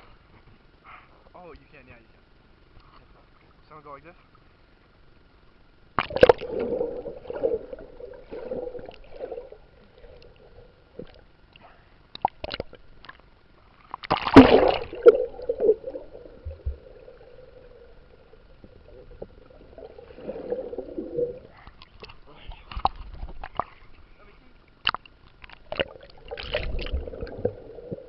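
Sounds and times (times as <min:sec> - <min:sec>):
water splash: 0:06.0 - 0:10.4, 0:14.0 - 0:21.6, 0:25.6 - 0:28.0
water gurgling and sloshing: 0:06.0 - 0:28.0.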